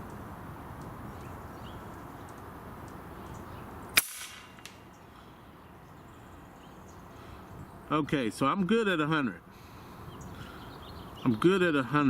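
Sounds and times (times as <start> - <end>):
air rifle shot: 3.9 - 4.8.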